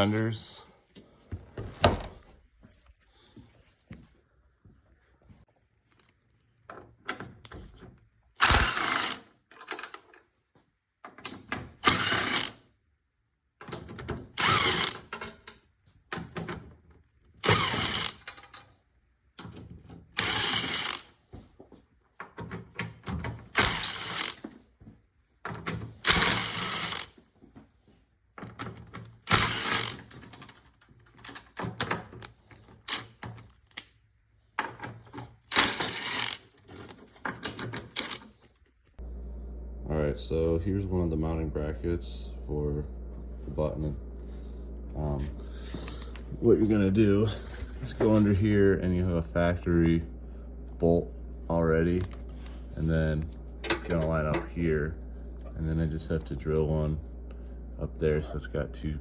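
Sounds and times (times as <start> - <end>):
tools and parts clanking: 6.6 - 10.3, 13.6 - 18.8, 19.4 - 21.5, 22.1 - 27.6, 28.4 - 38.8, 51.9 - 54.7
ratchet wrench clicking: 20.2 - 21.0, 26.1 - 27.1, 29.3 - 30.0.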